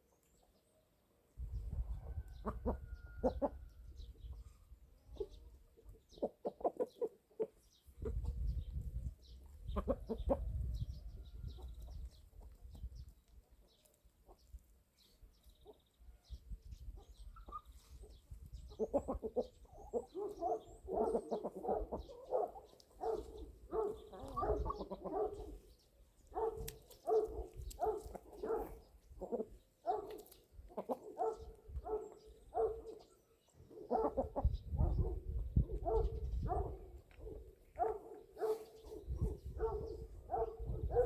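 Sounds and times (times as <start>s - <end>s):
chickens clucking: 1.6s - 14.6s, 16.9s - 25.8s, 26.5s - 32.2s, 32.8s - 37.1s.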